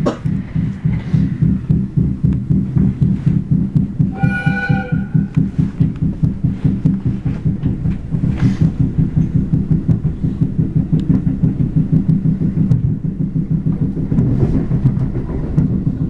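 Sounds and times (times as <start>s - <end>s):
running train rumble: 0.0s - 16.0s
train bogie clunking: 0.0s - 16.0s.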